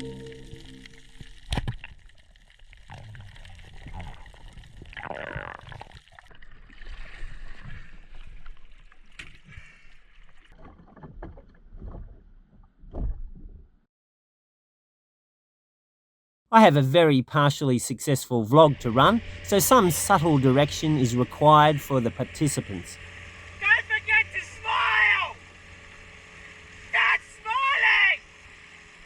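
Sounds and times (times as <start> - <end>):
water splashing and sloshing: 0.0 - 13.7.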